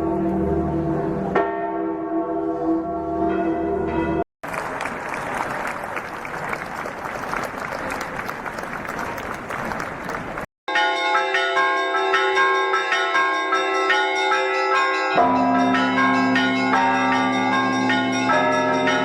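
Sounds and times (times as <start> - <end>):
big bell ringing: 0.0 - 4.2, 10.7 - 19.0
peal of church bells: 0.0 - 4.2, 10.7 - 19.0.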